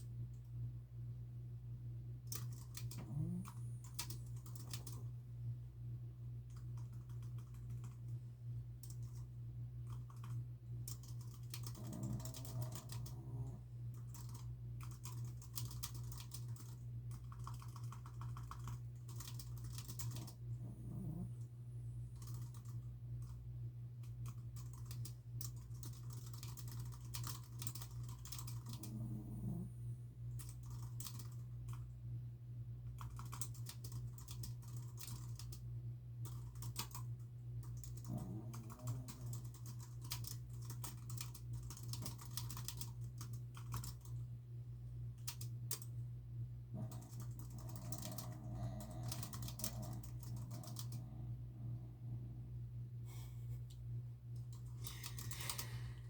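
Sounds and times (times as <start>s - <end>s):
steady low hum: 0.0s - 56.0s
typing on computer keyboard: 2.3s - 5.0s, 6.5s - 8.1s, 8.8s - 21.2s, 22.2s - 23.4s, 24.0s - 29.6s, 30.3s - 31.9s, 32.8s - 35.6s, 36.2s - 44.2s, 45.2s - 45.9s, 46.8s - 51.1s, 54.4s - 55.7s.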